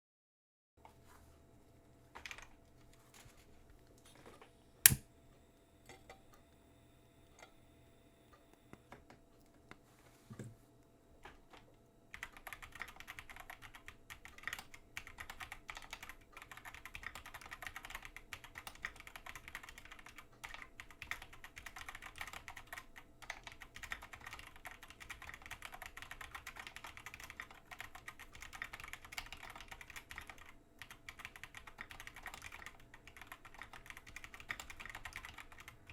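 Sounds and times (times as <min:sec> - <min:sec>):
mechanical keyboard typing: 0:11.2 - 0:35.9.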